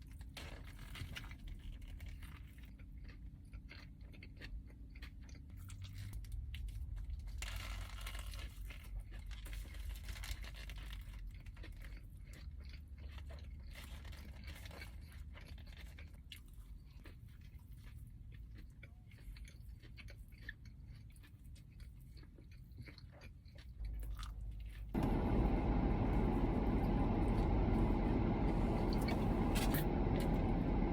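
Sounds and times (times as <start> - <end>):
person chewing and crunching food: 0.0 - 30.9
loud steady rushing noise: 25.0 - 30.9.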